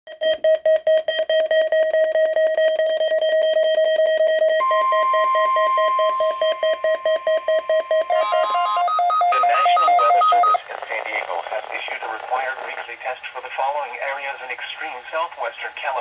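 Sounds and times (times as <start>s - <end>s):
rapid buzzy beeping tone: 8.1s - 10.6s.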